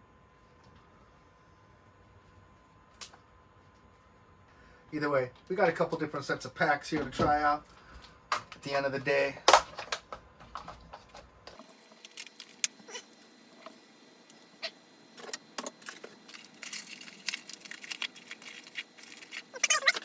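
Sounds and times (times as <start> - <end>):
small hard items clicking: 15.2 - 20.0
packaging rustling: 15.6 - 20.0.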